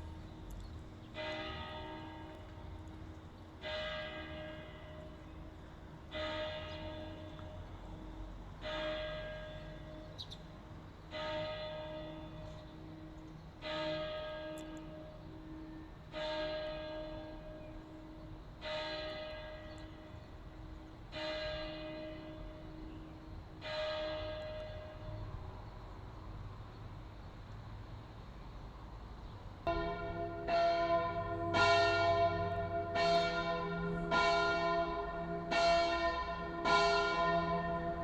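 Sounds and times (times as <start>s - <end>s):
church bell ringing: 0.0s - 25.5s, 29.7s - 38.0s.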